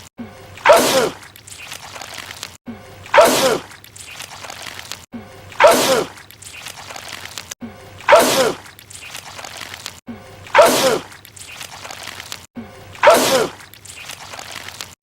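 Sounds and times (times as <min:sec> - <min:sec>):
man sneezing loudly: 0:08.1 - 0:08.6, 0:10.6 - 0:11.1, 0:13.0 - 0:13.6.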